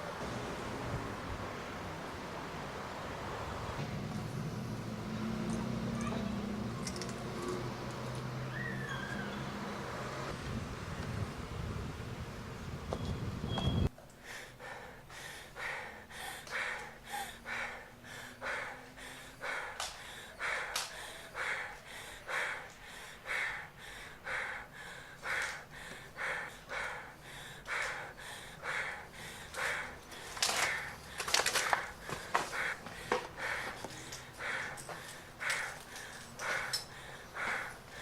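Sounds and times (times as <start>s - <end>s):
person panting heavily: 14.2s - 38.0s.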